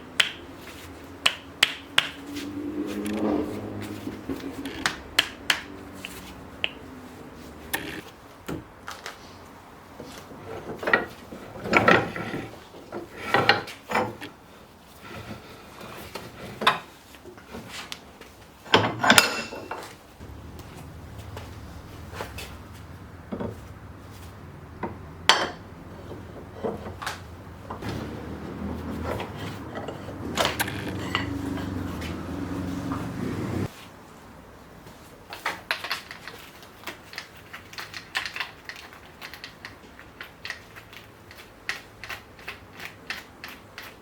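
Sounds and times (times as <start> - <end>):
metal tools clinking and scraping: 18.7 - 21.3, 22.1 - 33.2.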